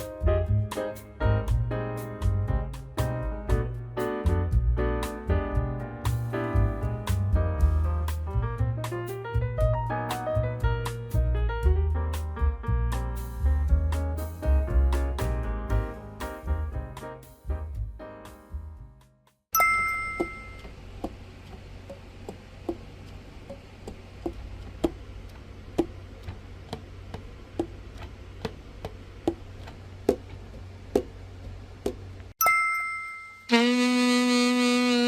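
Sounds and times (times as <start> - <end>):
background piano music: 0.0 - 20.3
chime-like ding: 19.5 - 20.7, 32.4 - 33.6
low steady hum: 19.6 - 33.8.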